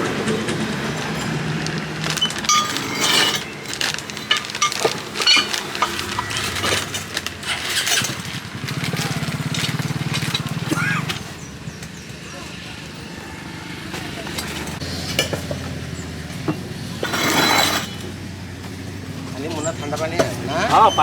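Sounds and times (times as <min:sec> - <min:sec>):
metallic clinks and knocks: 0:00.3 - 0:10.6.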